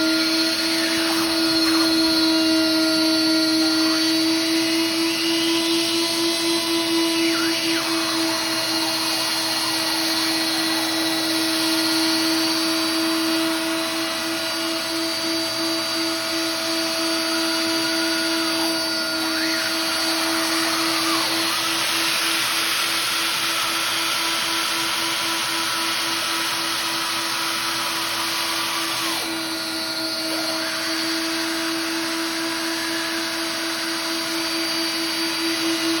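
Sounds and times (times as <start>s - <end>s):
vacuum cleaner running: 0.0s - 36.0s.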